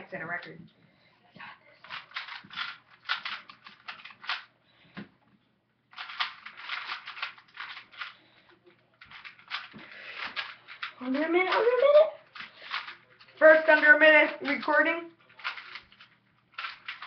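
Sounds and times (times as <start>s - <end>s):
puzzle cube clicking: 1.8s - 4.5s, 5.9s - 8.2s, 9.0s - 17.0s.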